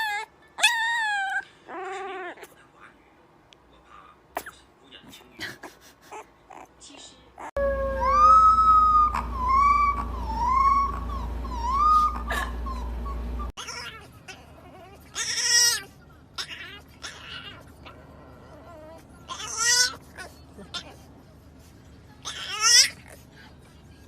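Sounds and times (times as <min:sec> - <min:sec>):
puppy shrill cry: 0:00.0 - 0:02.4
puppy howling: 0:00.0 - 0:02.5, 0:07.4 - 0:15.8
puppy whimpering: 0:00.0 - 0:02.6, 0:06.1 - 0:06.8, 0:07.4 - 0:21.1.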